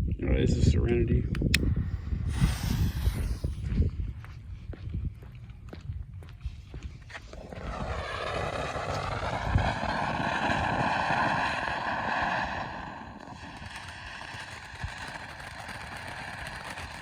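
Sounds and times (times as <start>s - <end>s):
firework fountain hissing and whistling: 1.4s - 3.7s, 7.4s - 17.0s.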